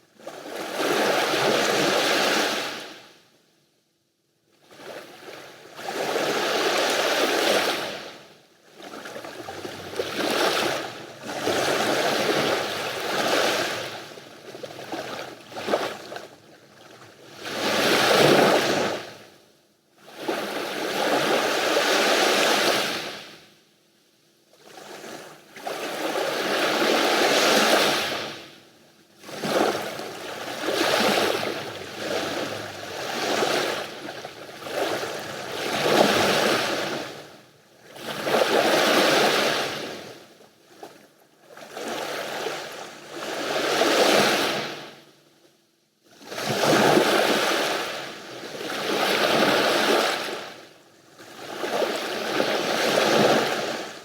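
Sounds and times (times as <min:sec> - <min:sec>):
sea waves breaking on shore: 0:08.8 - 0:16.3, 0:17.2 - 0:19.2, 0:29.2 - 0:40.2, 0:51.3 - 0:54.0.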